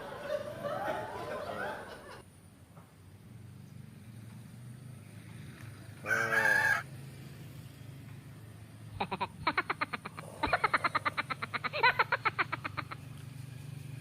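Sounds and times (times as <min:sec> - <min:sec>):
rooster crowing: 0:06.0 - 0:07.0.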